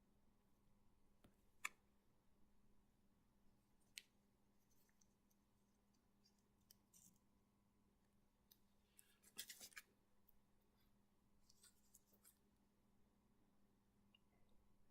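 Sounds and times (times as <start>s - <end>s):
light paper rustle: 9.0s - 9.9s, 11.4s - 12.4s.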